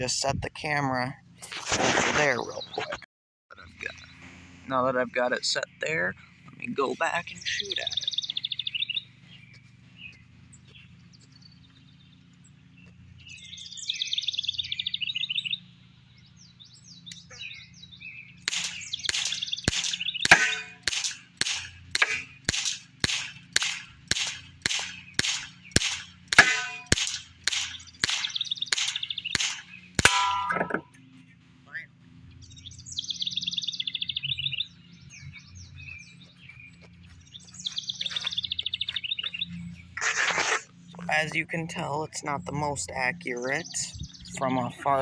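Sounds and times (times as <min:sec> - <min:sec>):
birds chirping: 0:00.0 - 0:45.0
bb pistol shots: 0:18.4 - 0:30.8.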